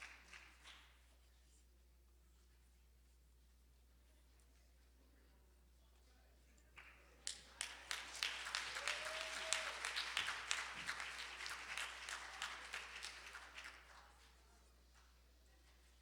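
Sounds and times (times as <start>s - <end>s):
audience applause: 7.2s - 14.1s.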